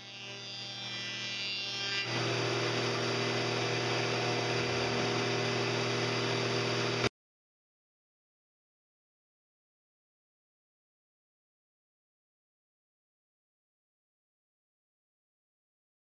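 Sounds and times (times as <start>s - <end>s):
wood router cutting: 0.0s - 7.1s.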